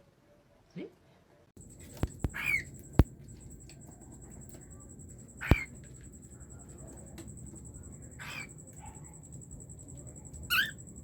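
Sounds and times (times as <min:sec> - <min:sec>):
cockatiel calling: 0:01.8 - 0:03.1, 0:05.3 - 0:05.8, 0:08.2 - 0:09.0, 0:10.5 - 0:10.8
sharp click: 0:01.9 - 0:03.2.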